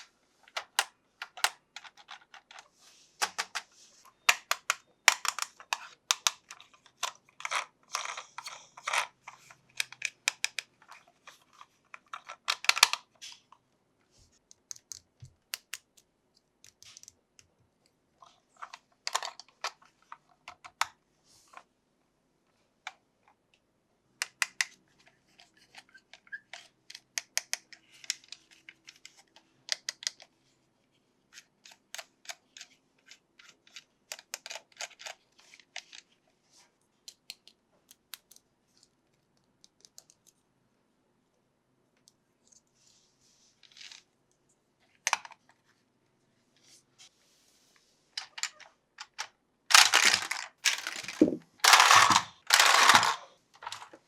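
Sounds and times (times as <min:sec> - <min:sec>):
plastic packaging clicking and crinkling: 0:00.0 - 0:13.4, 0:48.2 - 0:54.0
packaging tearing: 0:49.7 - 0:53.2.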